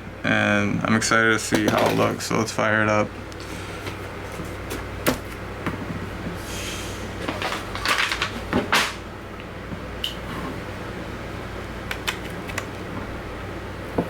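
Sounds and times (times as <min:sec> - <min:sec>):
steady low hum: 0:00.0 - 0:14.0
rustling and scraping: 0:07.2 - 0:09.0.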